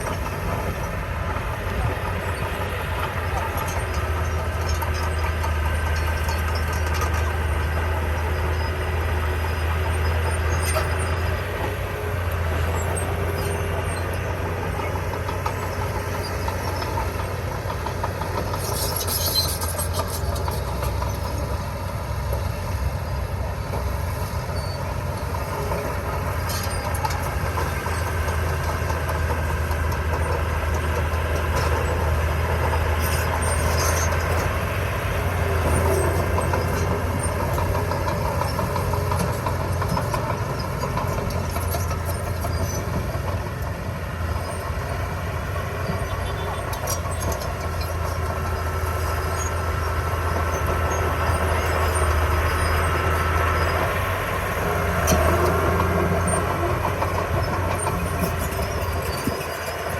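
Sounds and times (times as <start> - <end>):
construction machinery diesel engine: 0.0 - 59.9.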